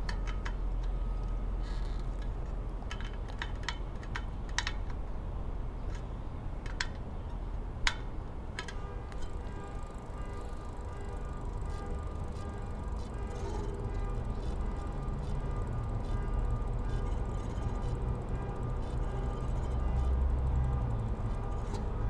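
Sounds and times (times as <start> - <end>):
light metal clicks and taps: 0.0 - 5.0, 5.9 - 9.7
steady low hum: 0.0 - 22.0.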